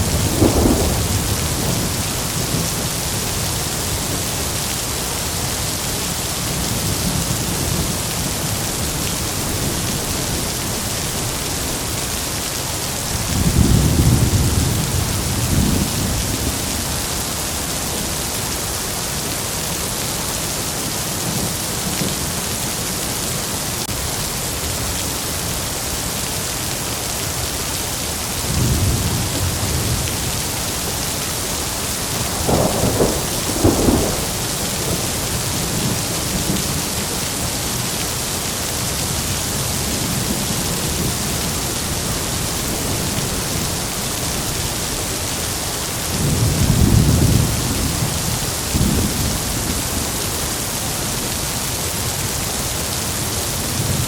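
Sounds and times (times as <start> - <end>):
sharp thunder claps: 0.0 - 2.5, 32.2 - 36.6
thunder rumbling: 0.0 - 3.6, 32.1 - 37.2
heavy rain: 0.0 - 54.0.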